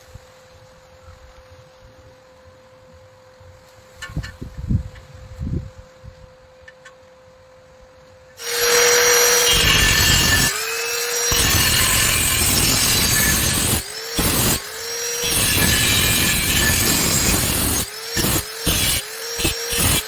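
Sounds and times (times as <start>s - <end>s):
faint motor whine: 0.0s - 20.0s
welding arc crackling: 8.4s - 20.0s.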